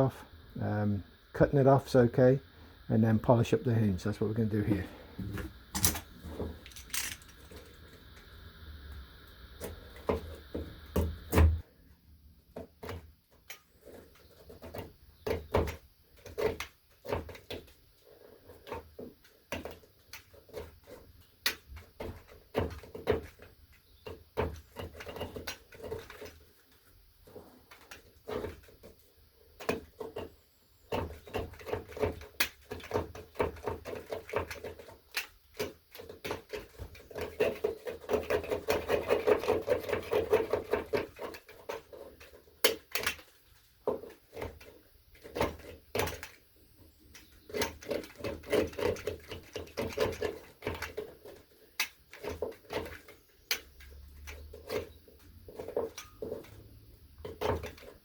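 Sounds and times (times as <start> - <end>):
clicks and knocks: 5.2 - 7.7.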